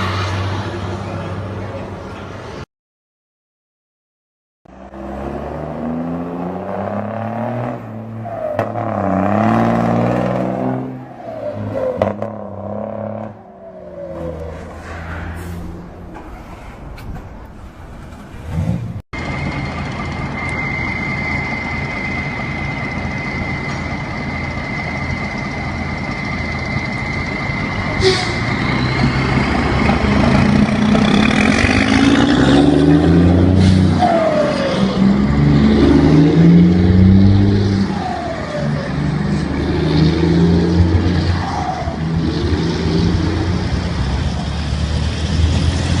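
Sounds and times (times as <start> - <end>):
diesel truck engine: 0.0 - 2.6, 4.7 - 46.0
high turbo whistle: 20.2 - 29.0.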